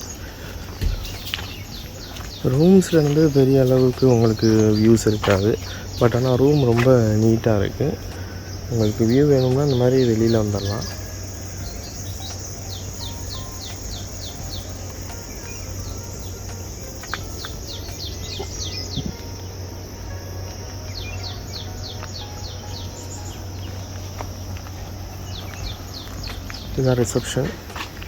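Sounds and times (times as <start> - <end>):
insect drone: 0.0 - 28.0.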